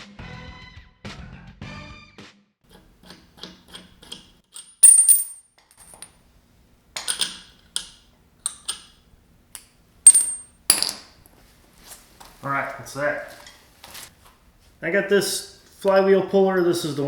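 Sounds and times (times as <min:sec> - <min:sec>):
metal tools clinking and clanking: 0:02.7 - 0:06.2, 0:07.0 - 0:09.0, 0:10.1 - 0:11.1.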